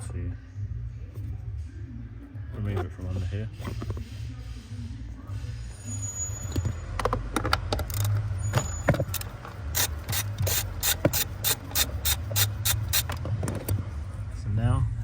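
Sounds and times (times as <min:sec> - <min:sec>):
socket ratchet clicking: 0:07.8 - 0:08.3, 0:09.0 - 0:13.2.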